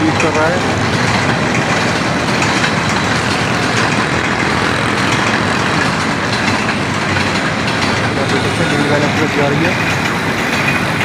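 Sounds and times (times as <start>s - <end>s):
train wheels rushing on rails: 0.0s - 11.0s.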